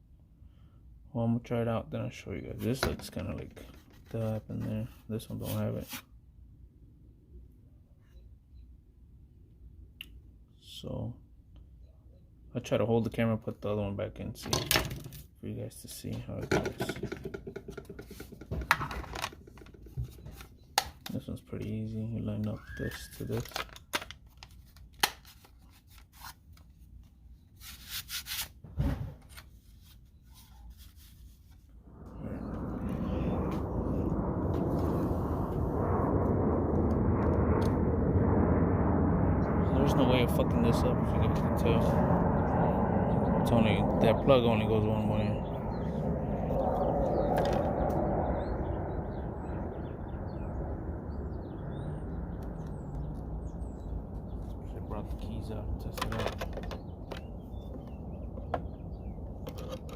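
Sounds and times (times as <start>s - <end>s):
plastic parts scraping: 16.4s - 20.5s, 22.9s - 26.5s, 56.0s - 57.2s, 59.4s - 59.9s
low background rumble: 31.3s - 59.9s
small birds chirping: 42.4s - 59.8s.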